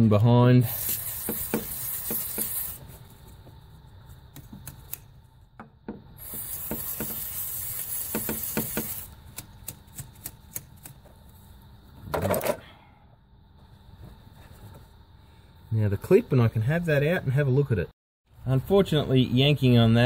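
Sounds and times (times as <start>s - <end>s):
aerosol can spraying hiss: 0.6s - 3.0s, 6.1s - 9.2s.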